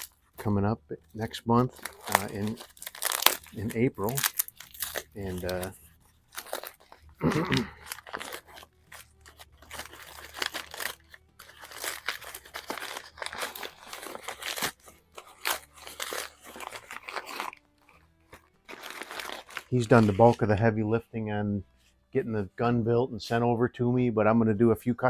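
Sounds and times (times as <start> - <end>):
packing wrap crinkling and tearing: 0.0 - 0.5, 1.2 - 20.7.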